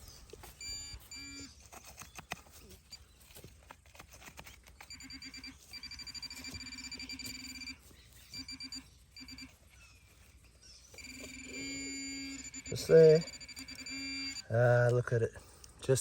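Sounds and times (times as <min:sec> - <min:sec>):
metal detector beeping: 0:00.0 - 0:03.2, 0:04.4 - 0:15.4.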